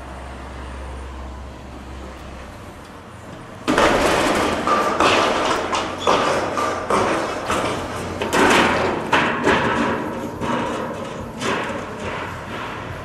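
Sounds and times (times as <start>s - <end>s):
heavy machine engine humming: 0.0s - 13.0s
rubble crashing and clattering: 3.6s - 13.0s.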